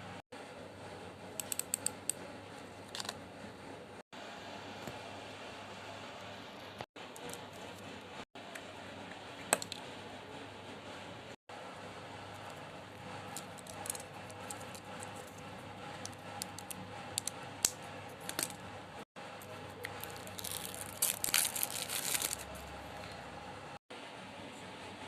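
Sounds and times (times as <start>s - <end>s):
plastic packaging crinkling: 13.3s - 15.4s, 19.8s - 23.1s.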